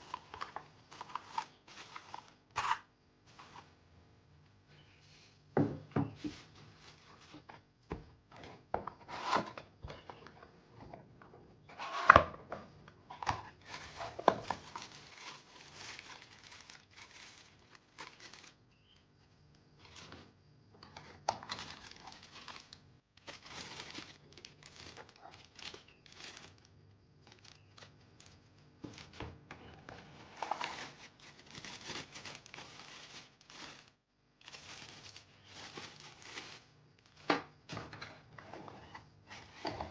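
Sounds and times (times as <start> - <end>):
plastic and paper crinkling: 0.0 - 3.7, 6.1 - 7.7, 13.1 - 19.1, 20.9 - 37.4.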